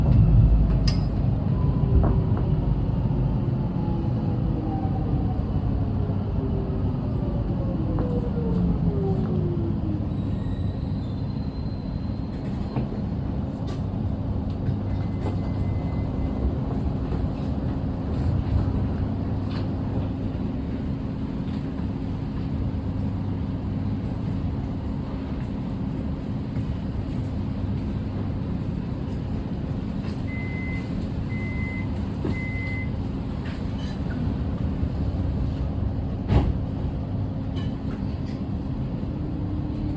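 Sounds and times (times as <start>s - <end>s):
train low rumble and hum: 0.0s - 39.9s
door warning beeps: 30.3s - 33.0s.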